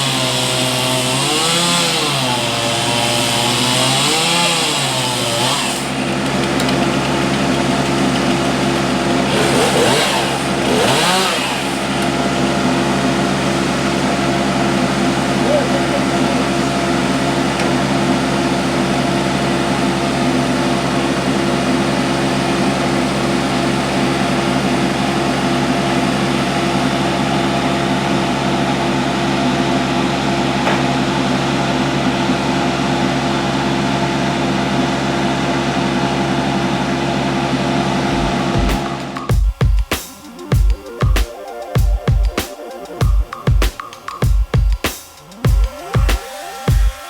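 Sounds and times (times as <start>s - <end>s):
large engine humming: 0.0s - 47.0s
music with heavy bass beat: 38.1s - 47.0s.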